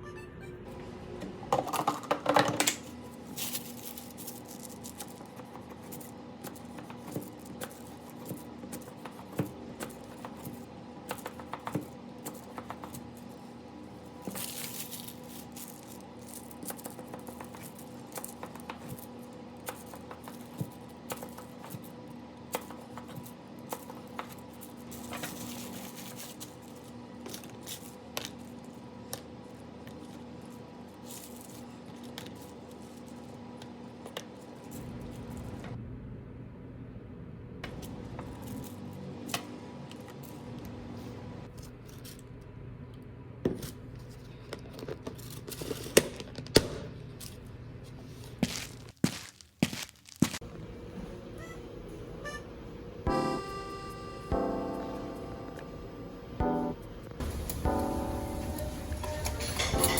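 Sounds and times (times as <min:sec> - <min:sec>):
low appliance hum: 0:00.0 - 0:59.9
utensils tapping and clicking: 0:57.2 - 0:59.9.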